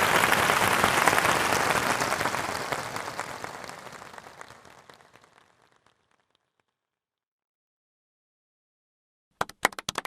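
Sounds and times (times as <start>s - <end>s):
applause: 0.0s - 6.8s, 9.4s - 10.0s.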